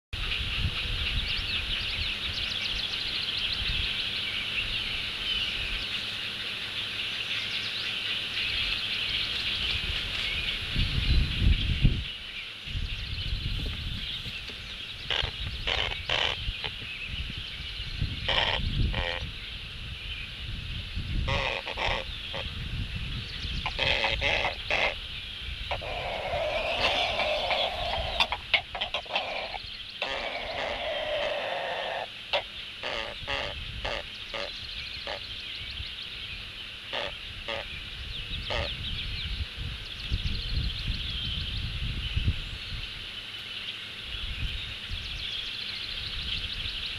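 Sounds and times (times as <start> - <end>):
wind on microphone: 0.2 - 4.0, 9.4 - 32.0, 32.8 - 43.1, 44.1 - 46.9
steady high hiss: 0.2 - 46.9
short animal calls: 25.7 - 32.1.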